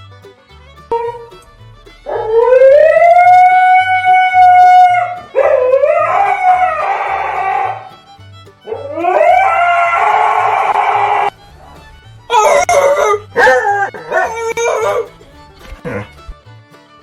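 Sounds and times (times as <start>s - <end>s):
background music with bass line: 0.0s - 17.0s
husky howling: 0.9s - 8.0s, 8.7s - 11.4s, 12.3s - 15.2s.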